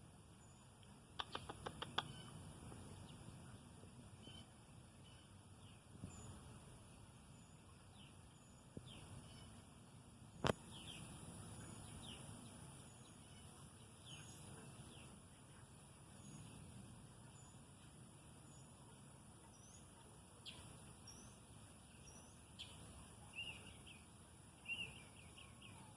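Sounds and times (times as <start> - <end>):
bird chirps: 0.4 - 9.7, 10.3 - 25.9
sharp click: 1.2 - 2.2.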